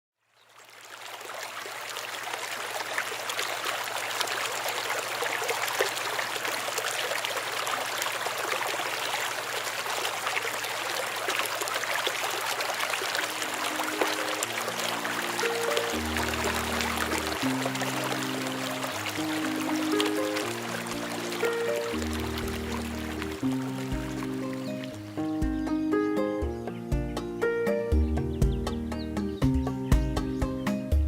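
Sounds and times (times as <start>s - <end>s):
stream water babbling: 0.2s - 25.9s
music notes: 13.2s - 31.0s.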